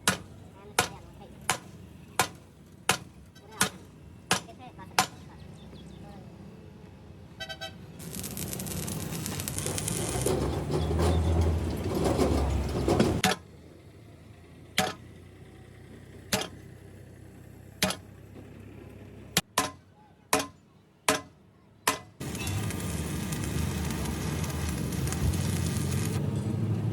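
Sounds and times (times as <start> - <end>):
tool strikes on metal: 0.0 - 5.2, 12.9 - 13.4, 14.8 - 15.0, 16.3 - 16.6, 17.8 - 18.0, 19.4 - 22.2
low workshop rumble: 8.0 - 19.5.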